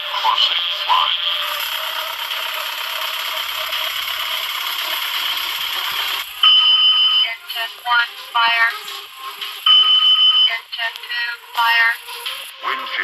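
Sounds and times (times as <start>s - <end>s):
warning device mechanical rattle: 1.4s - 7.2s
electronic alarm tone: 6.4s - 8.7s, 9.7s - 12.0s.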